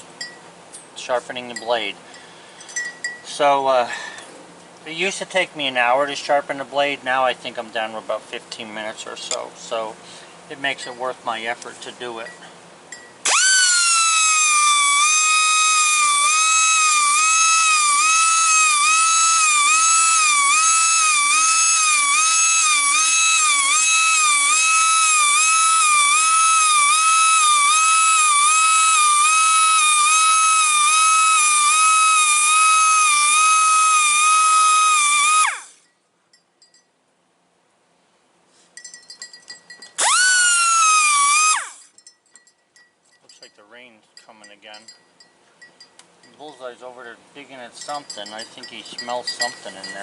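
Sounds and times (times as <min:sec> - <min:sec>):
grinding wheel whining: 0:13.2 - 0:35.9, 0:39.2 - 0:42.0.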